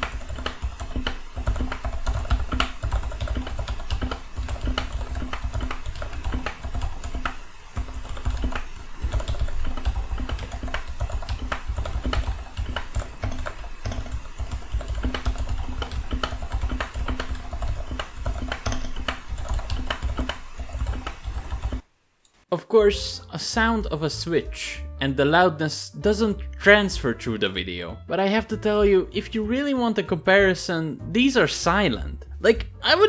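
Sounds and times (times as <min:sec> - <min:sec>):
mechanical keyboard typing: 0:00.0 - 0:21.8.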